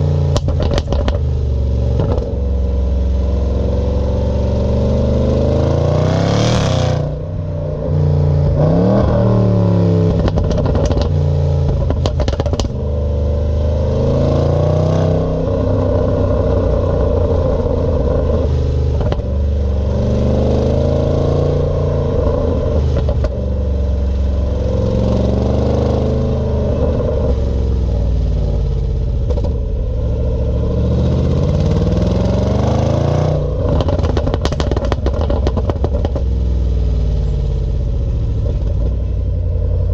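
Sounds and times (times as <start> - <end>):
car engine revving: 0.0 - 39.9
exhaust pops and crackles: 0.3 - 2.4, 10.1 - 12.8, 18.9 - 19.3, 22.9 - 23.4, 29.2 - 29.7, 33.5 - 36.4, 38.4 - 39.2.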